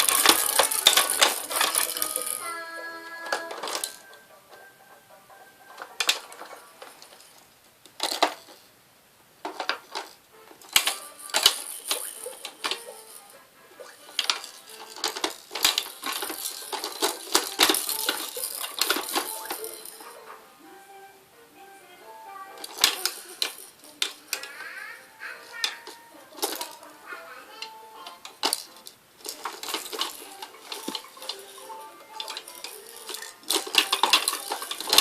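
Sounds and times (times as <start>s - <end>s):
faint background music: 0.0s - 35.0s
sharp clicks and clatters: 28.2s - 35.0s.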